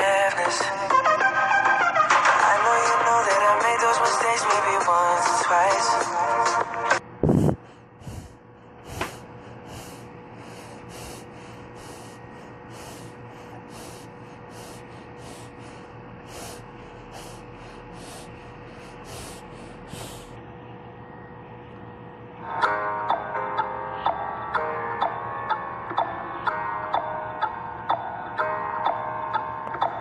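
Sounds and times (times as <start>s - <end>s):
faint steady hum: 7.0s - 30.0s.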